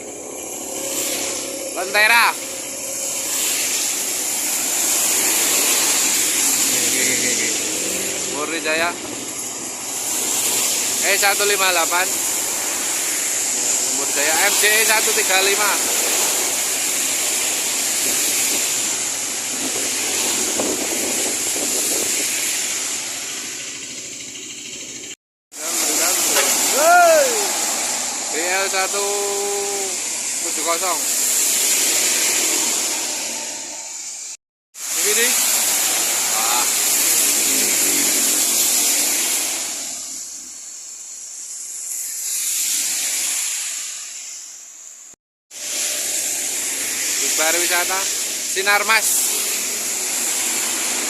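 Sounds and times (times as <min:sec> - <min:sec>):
bus engine: 0:00.0 - 0:14.8, 0:15.6 - 0:34.3, 0:35.4 - 0:40.5
tyres hissing on wet road: 0:00.0 - 0:51.0.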